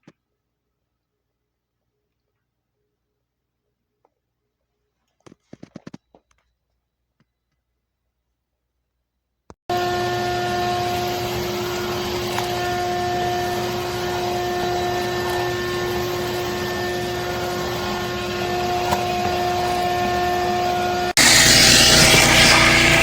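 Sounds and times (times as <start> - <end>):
shop vacuum motor whining: 9.7 - 23.0.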